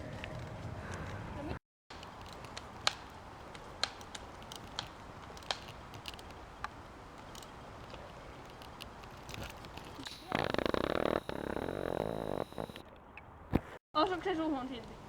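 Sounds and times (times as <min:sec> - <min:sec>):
sharp clicks and snaps: 0:01.9 - 0:06.4
faint steady hiss: 0:10.0 - 0:12.8.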